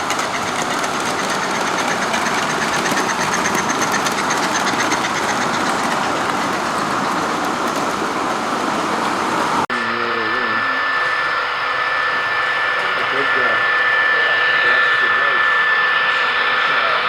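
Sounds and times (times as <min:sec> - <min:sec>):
model train wheels clicking: 0:00.0 - 0:08.4.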